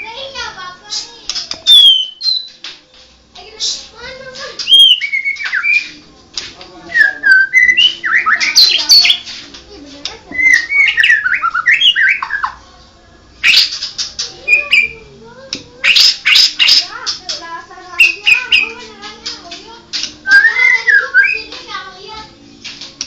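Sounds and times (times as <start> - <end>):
bird singing whistled notes: 1.6 - 2.6, 4.6 - 6.0, 7.0 - 9.2, 10.4 - 12.6, 14.4 - 15.0, 15.8 - 16.9, 18.0 - 18.8, 20.2 - 21.5.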